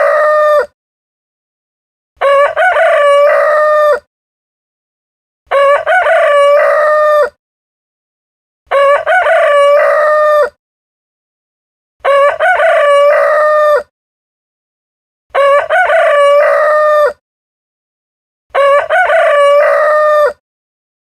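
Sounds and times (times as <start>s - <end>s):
rooster crowing: 0.0s - 0.7s, 2.2s - 4.1s, 5.5s - 7.4s, 8.7s - 10.6s, 12.0s - 13.9s, 15.3s - 17.2s, 18.5s - 20.4s.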